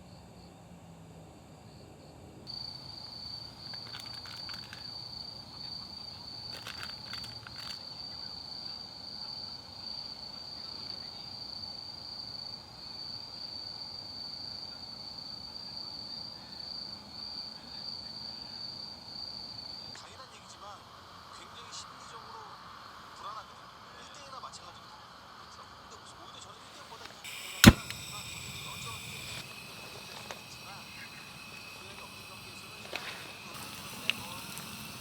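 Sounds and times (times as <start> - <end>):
cricket trilling: 1.7 - 35.0
short clicks or rustles: 3.6 - 4.9, 6.5 - 7.8.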